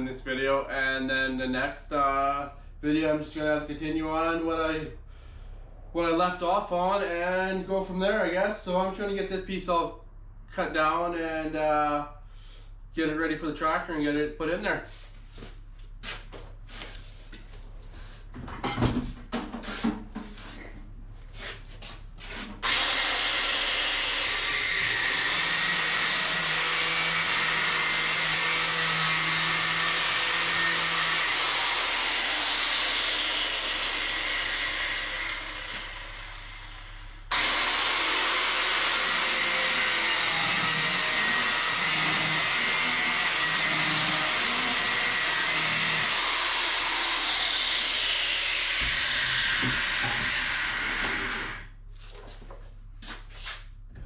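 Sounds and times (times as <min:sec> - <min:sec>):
angle grinder cutting metal: 0:22.6 - 0:51.7.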